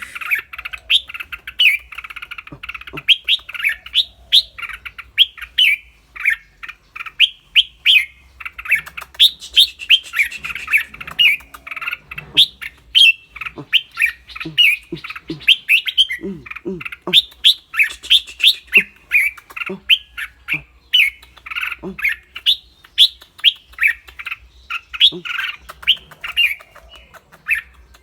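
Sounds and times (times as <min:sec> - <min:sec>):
buzzy bird chattering calls: 0:00.0 - 0:28.0
bird whistled notes: 0:09.1 - 0:11.5, 0:17.4 - 0:18.9.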